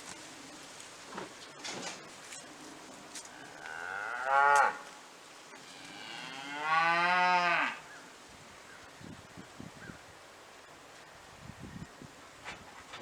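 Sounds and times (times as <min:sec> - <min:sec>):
cow mooing: 0:03.4 - 0:04.8, 0:05.7 - 0:07.8.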